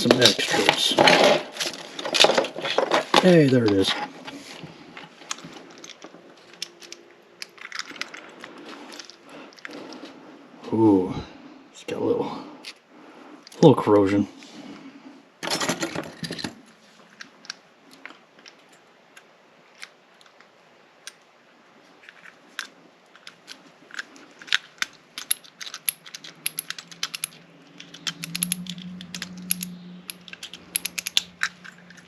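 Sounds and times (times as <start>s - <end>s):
metal lock tools clicking: 22.6s - 32.0s.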